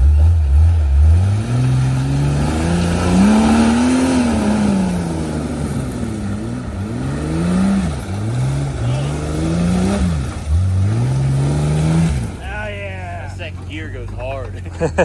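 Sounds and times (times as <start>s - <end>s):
engine revving: 0.0s - 15.0s.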